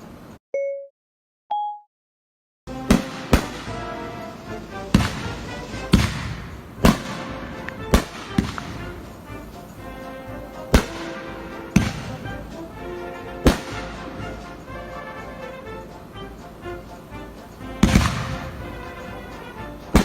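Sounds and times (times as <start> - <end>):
fireworks exploding: 2.7 - 16.2, 17.6 - 20.0
music playing: 2.7 - 20.0.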